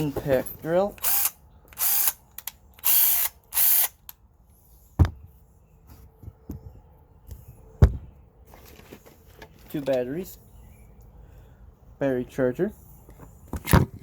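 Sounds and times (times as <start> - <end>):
cordless drill motor bursts: 1.0 - 2.2, 2.8 - 4.0.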